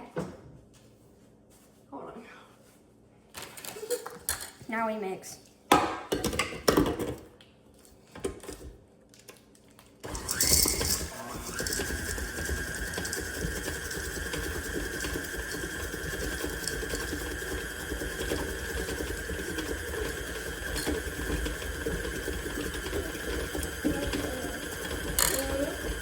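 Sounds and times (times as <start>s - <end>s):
electric mixer motor whine: 10.0s - 26.0s.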